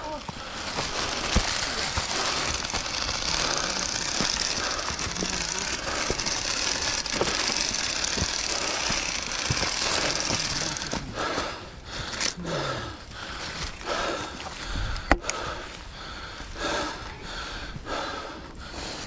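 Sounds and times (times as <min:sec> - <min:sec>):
rough rattling and clattering: 0:00.5 - 0:11.1.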